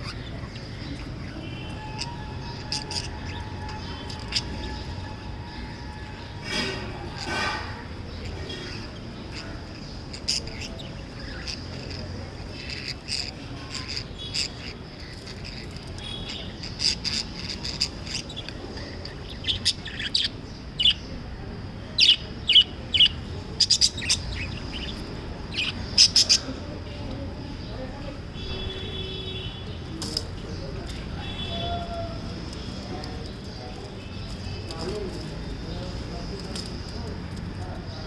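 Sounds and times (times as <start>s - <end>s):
budgerigars chirping: 8.2s - 21.1s, 22.0s - 26.6s.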